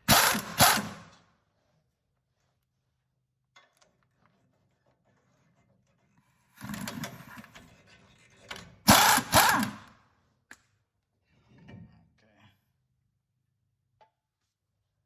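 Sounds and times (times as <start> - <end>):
impact wrench bursts: 0.0 - 1.1, 8.9 - 9.9.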